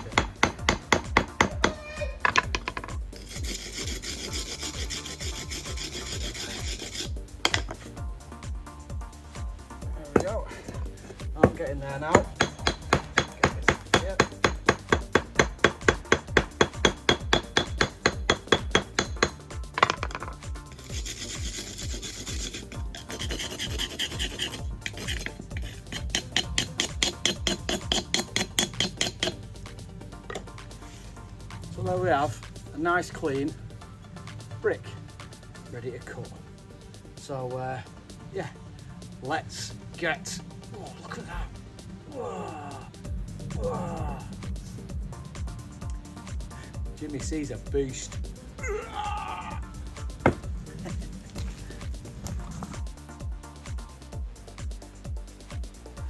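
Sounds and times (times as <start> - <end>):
mortar scraped off brick: 2.5 - 7.9, 19.0 - 29.4
mortar knocked off brick: 50.2 - 50.5.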